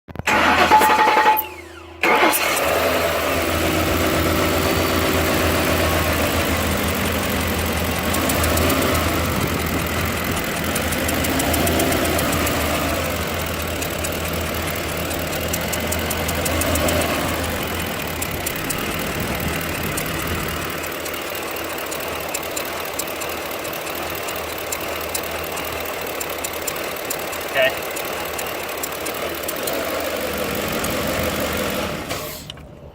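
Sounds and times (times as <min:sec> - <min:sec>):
truck engine idling: 0:00.2 - 0:32.9
fast light ticking: 0:13.2 - 0:29.7.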